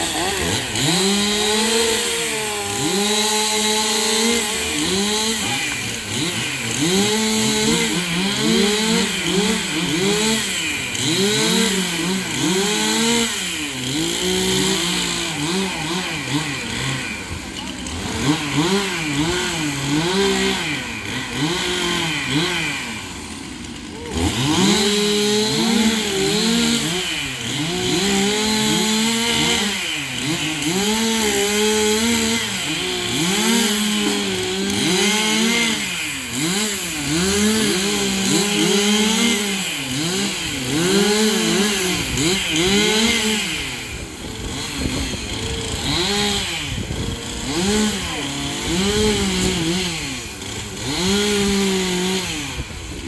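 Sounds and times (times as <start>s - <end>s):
chainsaw cutting wood: 0.0s - 53.0s.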